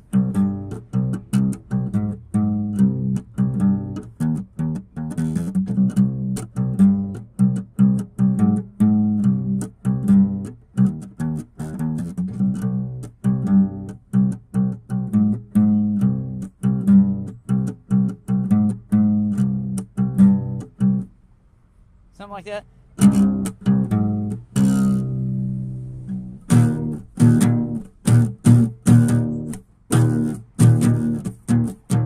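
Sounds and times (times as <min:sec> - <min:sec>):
plucked string music: 0:00.0 - 0:21.2, 0:23.0 - 0:32.0
low bass line: 0:23.0 - 0:32.0.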